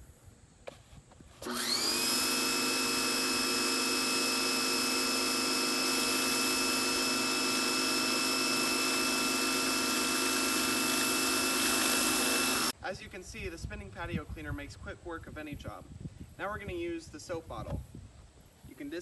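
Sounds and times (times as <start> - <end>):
pressure washer motor whine: 1.4 - 12.8.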